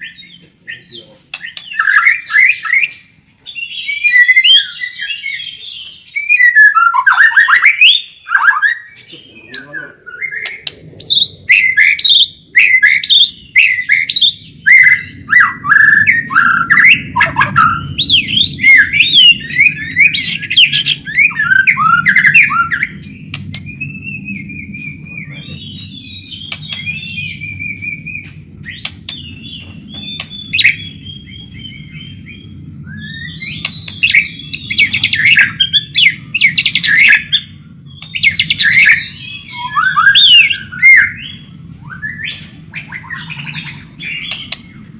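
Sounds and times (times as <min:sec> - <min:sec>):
songbird whistling and twittering: 0:00.0 - 0:44.9
low steady hum: 0:08.0 - 0:44.9.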